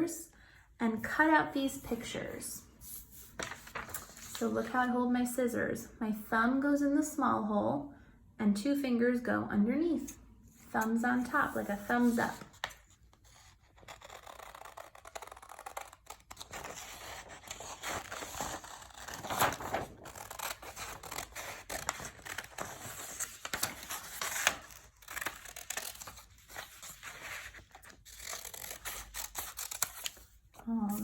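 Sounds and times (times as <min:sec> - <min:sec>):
paper rustling: 0:02.8 - 0:04.8, 0:10.8 - 0:31.0
scissors cutting paper: 0:10.8 - 0:30.3.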